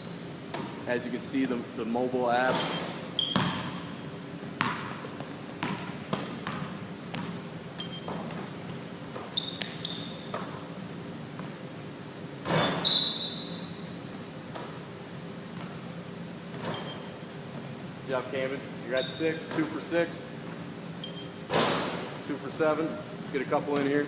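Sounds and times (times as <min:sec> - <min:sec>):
shoe squeaks: 0:00.0 - 0:01.0, 0:02.5 - 0:03.9, 0:07.8 - 0:08.4, 0:09.2 - 0:10.6, 0:12.5 - 0:13.9, 0:16.6 - 0:17.2, 0:18.9 - 0:19.5, 0:21.0 - 0:21.4
basketball bouncing on gym floor: 0:02.5 - 0:11.6, 0:19.1 - 0:19.8.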